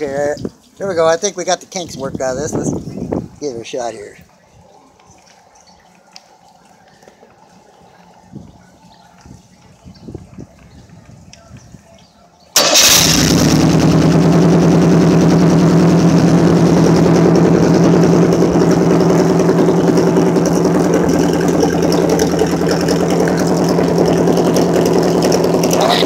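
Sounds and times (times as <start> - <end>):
boat engine running: 12.6 - 26.0.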